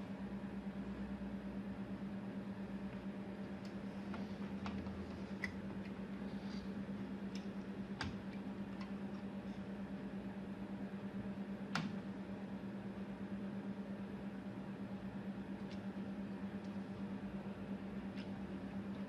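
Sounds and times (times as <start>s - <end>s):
faint hum of bench equipment: 0.0s - 19.0s.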